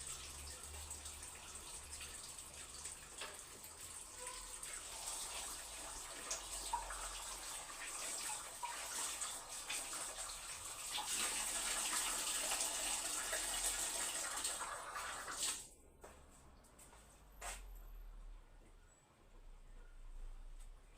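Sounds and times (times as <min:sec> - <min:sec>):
water running from tap: 0:00.0 - 0:15.7.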